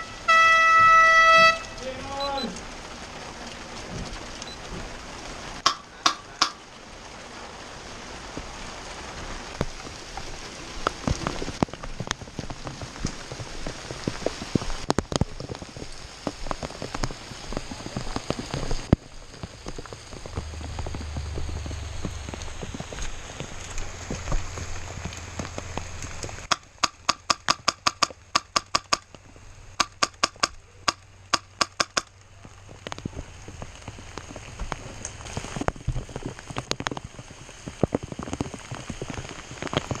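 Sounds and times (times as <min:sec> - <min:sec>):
steady rainfall: 0:00.0 - 0:40.0
sharp knocks: 0:05.6 - 0:06.6, 0:26.5 - 0:29.0, 0:29.8 - 0:32.1.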